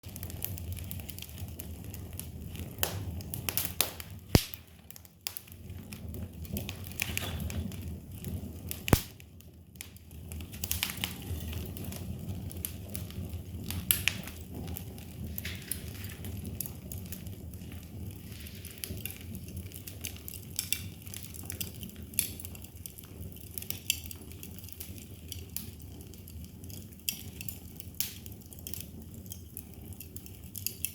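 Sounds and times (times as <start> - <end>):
fire crackling and popping: 0.0 - 30.9
low rumble of flames: 0.0 - 30.9.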